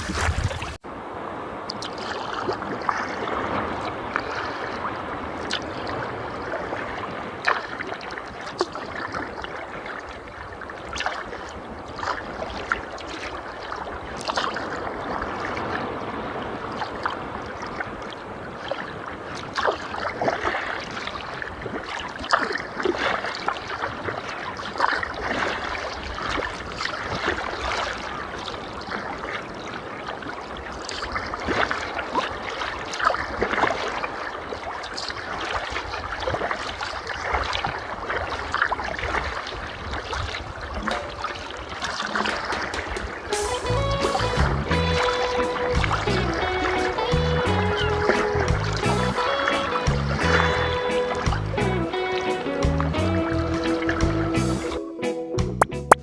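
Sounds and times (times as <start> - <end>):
small splashes and knocks: 0.0 - 0.8, 1.7 - 15.9, 16.7 - 43.3, 44.3 - 47.4
water lapping against hull: 0.0 - 54.9
paddle blades splashing: 0.0 - 55.0.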